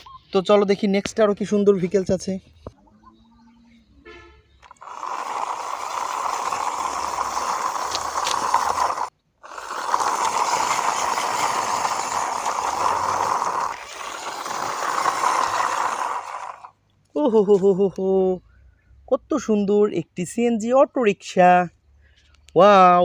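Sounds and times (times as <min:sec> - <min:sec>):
toy wheels rattling: 0:04.6 - 0:16.8.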